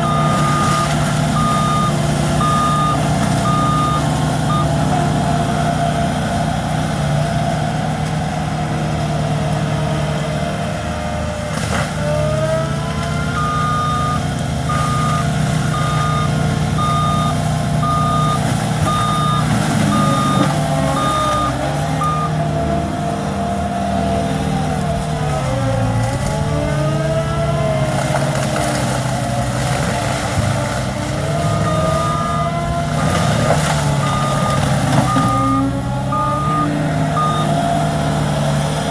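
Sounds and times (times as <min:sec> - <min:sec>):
backup alarm beeping: 0:00.0 - 0:04.9, 0:13.2 - 0:22.9, 0:31.3 - 0:33.2, 0:34.0 - 0:37.6
loader diesel engine whining: 0:00.0 - 0:38.9.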